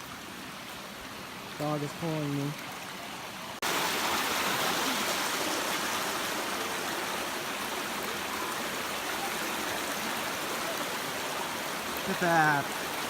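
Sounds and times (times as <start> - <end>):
flowing water rushing: 0.0 - 13.0.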